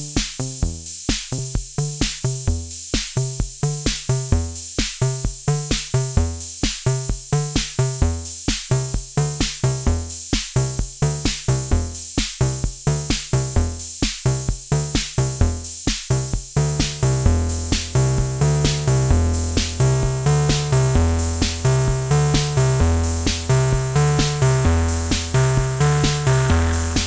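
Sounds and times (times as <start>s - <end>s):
drum machine beat: 0.0s - 27.0s
analog bass synthesizer notes: 11.0s - 27.0s.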